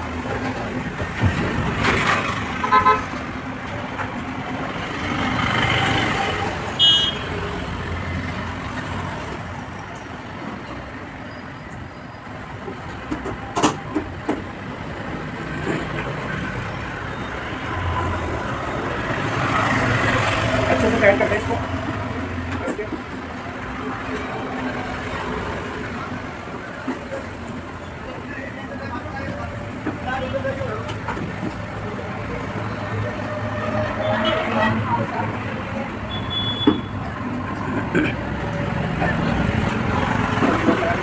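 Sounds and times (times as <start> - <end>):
street traffic: 0.0 - 41.0
vehicle horn toots: 2.6 - 3.1, 6.8 - 7.3, 36.1 - 37.0.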